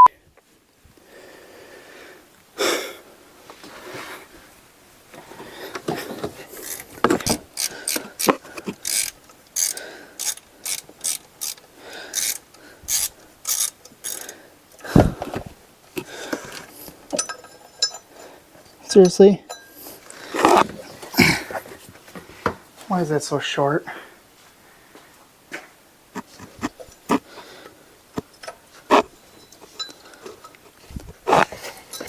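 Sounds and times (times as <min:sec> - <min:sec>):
ratchet wrench clicking: 0:06.6 - 0:14.3.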